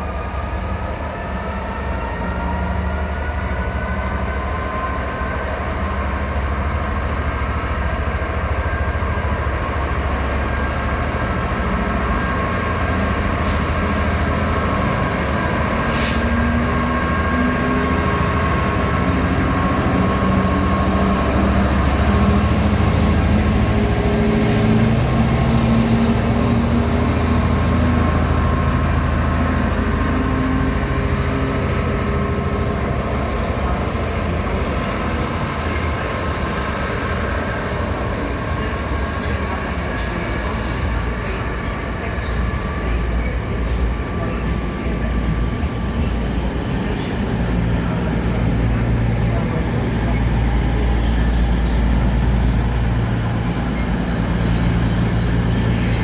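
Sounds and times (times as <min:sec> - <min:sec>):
train mechanical drone and whine: 0:00.0 - 0:56.0
short air hisses: 0:13.4 - 0:13.8, 0:15.8 - 0:16.3, 0:54.4 - 0:55.9.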